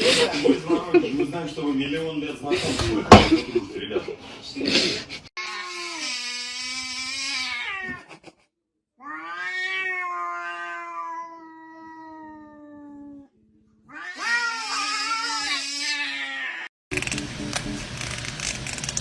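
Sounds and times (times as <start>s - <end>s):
cat yowling: 5.4s - 8.1s, 9.0s - 13.3s, 13.9s - 16.7s.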